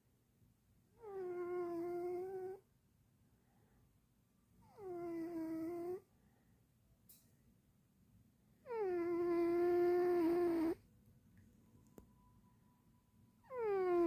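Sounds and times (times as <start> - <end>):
cat snoring with whistling tone: 1.0 - 2.6, 4.6 - 6.0, 8.6 - 10.8, 13.4 - 14.0.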